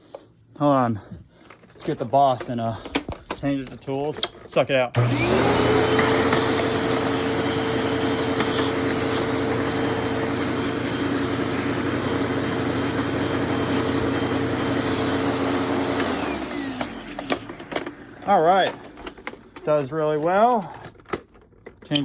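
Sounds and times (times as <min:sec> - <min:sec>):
vacuum cleaner motor whine: 0:04.9 - 0:20.9.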